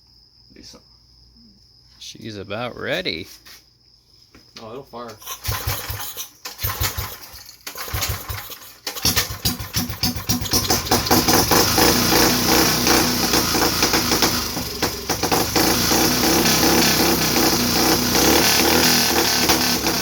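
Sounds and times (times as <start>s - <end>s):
pull-start cranking: 5.1s - 20.0s
small engine running: 5.3s - 20.0s.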